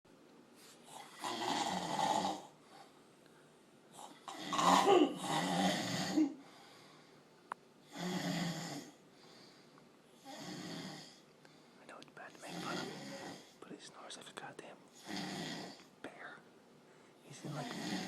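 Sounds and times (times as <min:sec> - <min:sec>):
man snoring loudly: 0:01.0 - 0:02.6, 0:04.2 - 0:06.3, 0:07.9 - 0:09.0, 0:10.2 - 0:11.2, 0:12.5 - 0:13.5, 0:15.0 - 0:15.8, 0:17.4 - 0:18.0.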